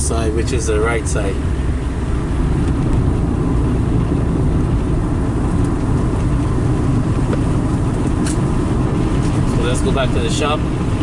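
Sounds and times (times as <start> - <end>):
car engine rumbling: 0.0 - 11.0.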